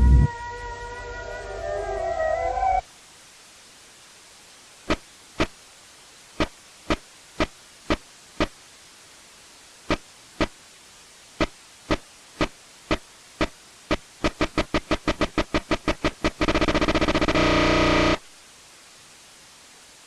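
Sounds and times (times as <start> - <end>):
faint static hiss: 0.0 - 20.0
distorted alarm blips: 12.4 - 18.2
harsh buzzing tone: 13.4 - 18.2.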